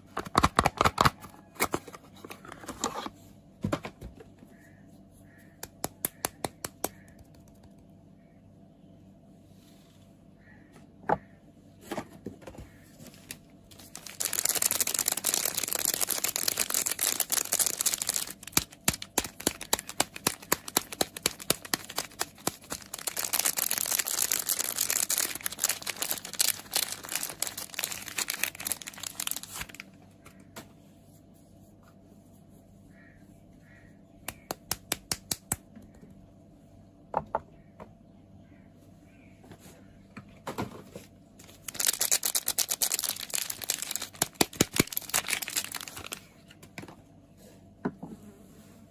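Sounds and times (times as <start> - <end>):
packaging crinkling and tearing: 0.2 - 1.3, 13.0 - 30.0, 41.4 - 46.4.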